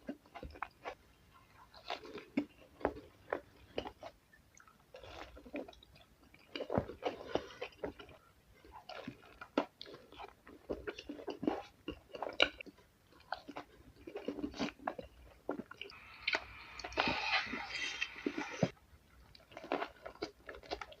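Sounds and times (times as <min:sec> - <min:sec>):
chewing and biting food: 0:00.0 - 0:21.0
mouth clicks: 0:15.9 - 0:18.7.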